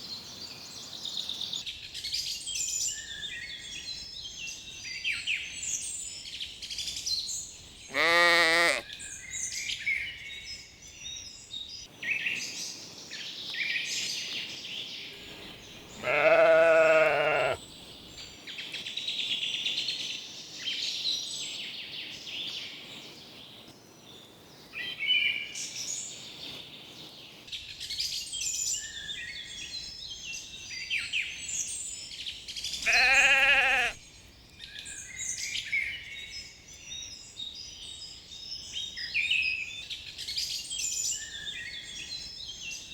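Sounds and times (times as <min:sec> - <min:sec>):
songbirds chirping and singing: 0:07.6 - 0:10.2, 0:14.4 - 0:18.4, 0:31.9 - 0:39.2
sheep bleating: 0:07.9 - 0:08.8, 0:15.9 - 0:17.6, 0:32.8 - 0:34.0.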